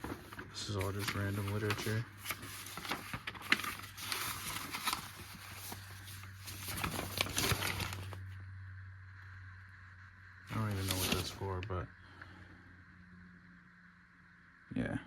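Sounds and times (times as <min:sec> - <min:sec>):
paper rustling: 0:00.0 - 0:08.2, 0:10.5 - 0:11.6.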